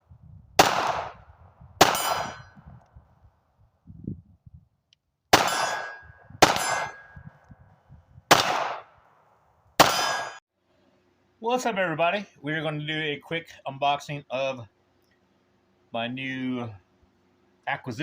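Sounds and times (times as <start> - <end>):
suppressed pistol shots: 0.6 - 1.2, 1.8 - 2.4, 5.3 - 7.2, 8.3 - 8.9, 9.8 - 10.4
steel target clanging: 1.8 - 2.6, 5.4 - 7.3, 9.8 - 10.4.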